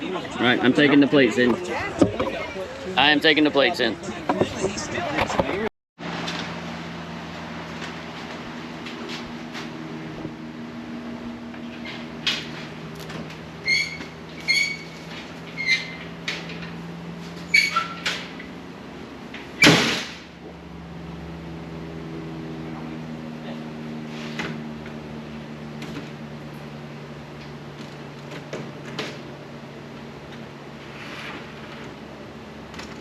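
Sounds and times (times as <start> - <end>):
door squeaking: 13.6 - 16.2, 17.5 - 18.2.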